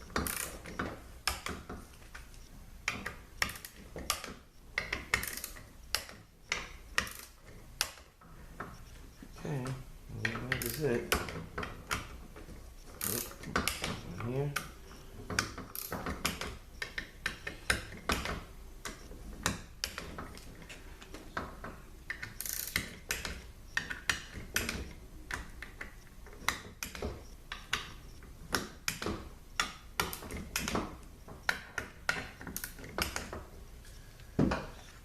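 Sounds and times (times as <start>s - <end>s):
ratchet wrench clicking: 5.1s - 6.1s, 22.4s - 23.3s.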